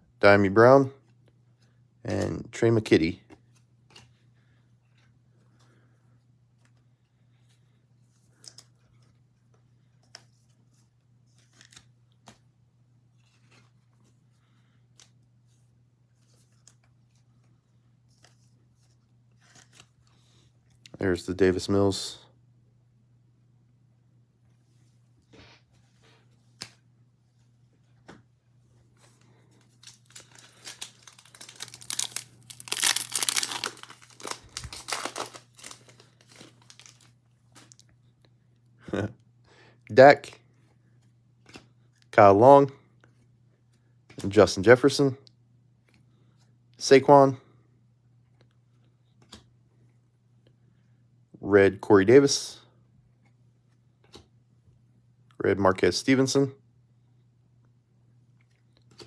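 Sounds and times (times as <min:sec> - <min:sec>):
low steady hum: 0:00.0 - 0:59.0
cards rustling: 0:08.1 - 0:12.5, 0:13.1 - 0:20.8, 0:28.8 - 0:37.9
foil wrapper tearing and crinkling: 0:29.8 - 0:37.2.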